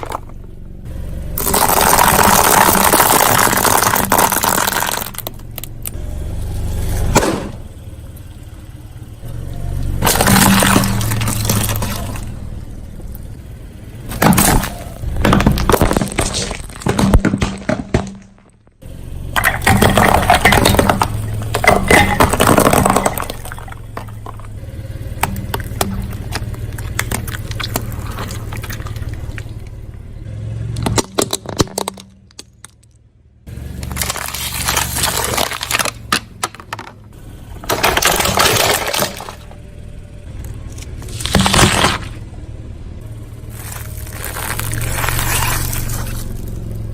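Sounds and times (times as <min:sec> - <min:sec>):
tyre crushing brittle objects: 0:00.0 - 0:00.4, 0:01.4 - 0:06.0, 0:10.0 - 0:12.3, 0:14.0 - 0:18.7, 0:19.4 - 0:30.0, 0:30.8 - 0:33.0, 0:33.7 - 0:37.0, 0:37.6 - 0:39.6, 0:40.6 - 0:42.2, 0:43.4 - 0:46.7
car engine running low: 0:00.0 - 0:46.9.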